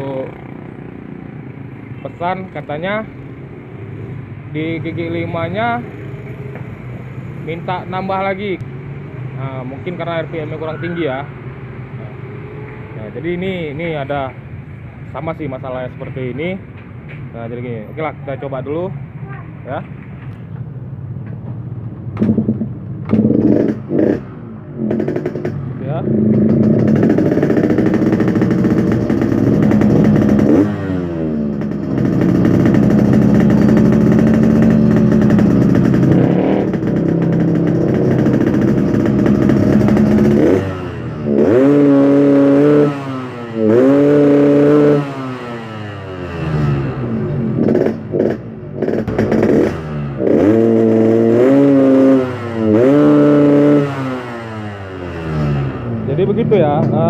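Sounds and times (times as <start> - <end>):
two-stroke motorcycle engine revving: 22.1 - 57.0.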